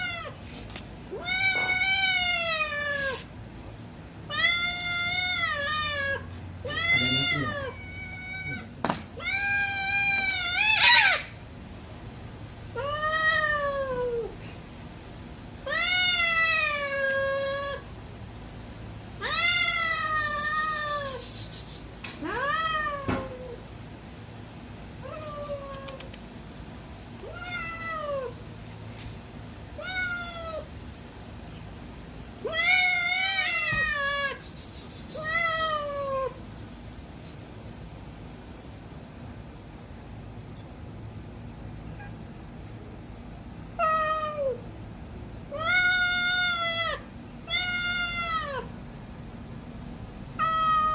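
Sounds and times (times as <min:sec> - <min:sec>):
cat meowing: 0:01.1 - 0:03.3, 0:04.3 - 0:11.3, 0:45.5 - 0:48.7, 0:50.4 - 0:50.9.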